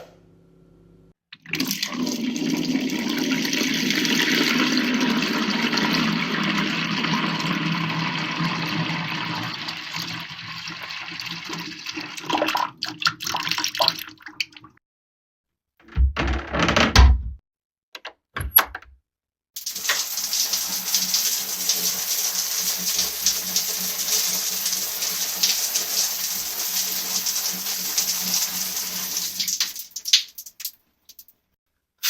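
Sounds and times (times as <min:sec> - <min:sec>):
toilet flushing: 0:01.4 - 0:14.3, 0:19.6 - 0:30.0.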